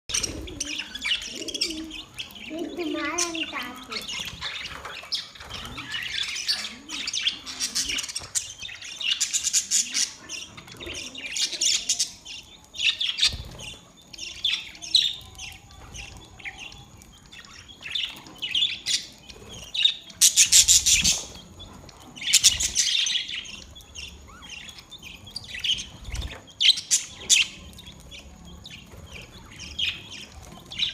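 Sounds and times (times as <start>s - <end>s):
budgerigars chirping: 0.1s - 30.9s.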